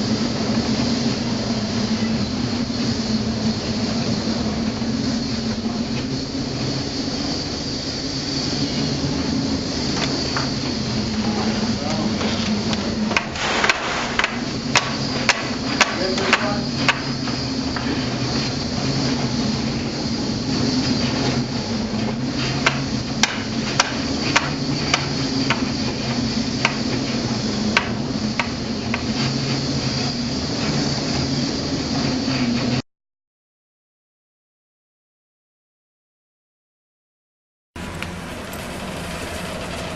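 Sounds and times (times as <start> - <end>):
sharp knocks and clacks: 12.2 - 17.1, 22.4 - 25.7
low hum: 37.8 - 39.9.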